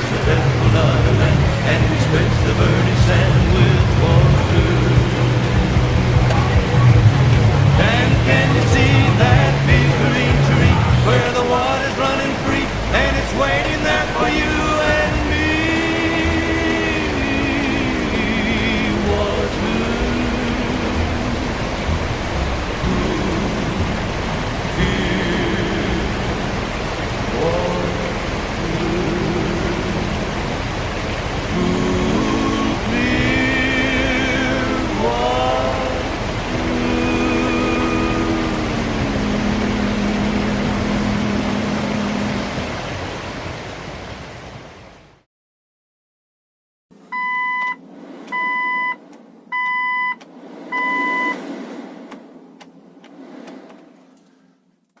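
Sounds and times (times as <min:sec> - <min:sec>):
car engine running: 0:00.0 - 0:43.5
low hum: 0:00.0 - 0:43.6, 0:47.1 - 0:54.6
river water rushing and splashing: 0:00.0 - 0:45.2
electronic beeps: 0:47.1 - 0:51.4.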